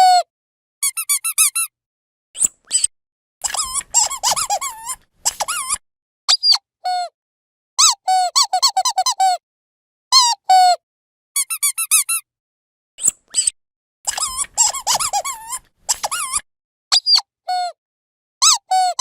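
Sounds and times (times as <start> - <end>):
squeaky dog toy squeaking: 0.8 - 1.7, 2.7 - 7.1, 7.8 - 9.4, 10.2 - 10.8, 11.4 - 12.2, 14.1 - 17.7, 18.4 - 19.0.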